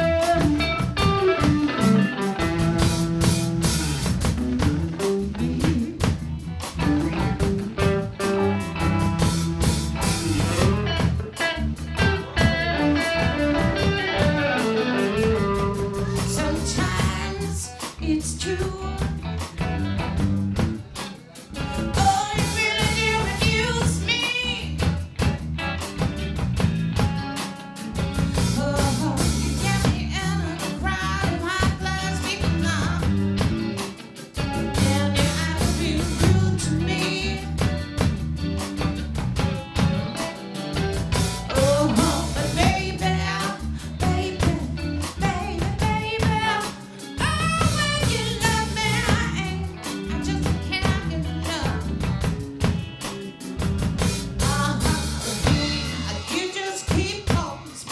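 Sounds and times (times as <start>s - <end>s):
drums: 0.0s - 57.9s
guitar: 0.0s - 57.9s
person singing: 12.0s - 19.4s, 21.7s - 24.8s, 28.4s - 34.1s, 34.7s - 37.8s, 41.2s - 52.2s, 54.4s - 57.9s.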